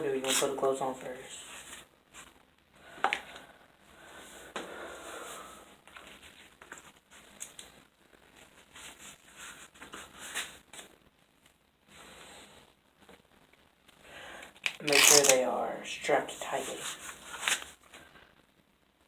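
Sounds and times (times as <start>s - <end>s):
velcro ripping: 14.7s - 15.4s.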